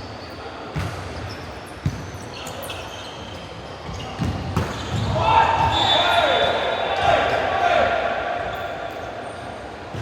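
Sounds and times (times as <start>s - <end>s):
shoe squeaks: 0.0s - 6.7s
basketball bouncing on court floor: 3.8s - 5.8s.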